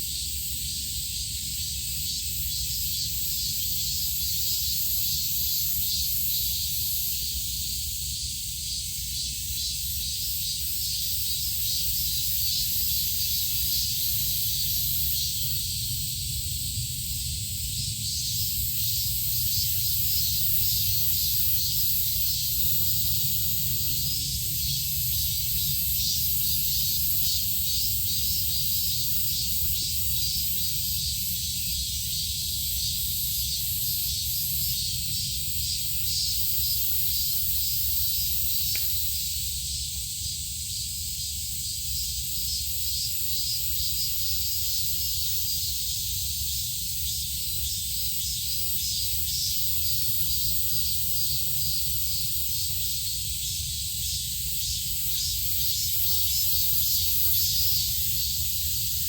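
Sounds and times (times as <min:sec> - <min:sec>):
constant high hiss: 0:00.0 - 0:59.0
faint click: 0:38.7 - 0:39.0.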